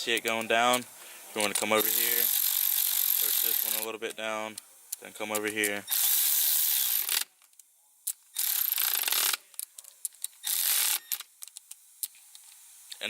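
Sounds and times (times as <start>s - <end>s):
small clicks of tool and bolts: 0.1s - 0.8s
electric ratchet running: 1.4s - 4.0s, 5.3s - 7.3s, 8.3s - 9.4s, 10.3s - 11.5s.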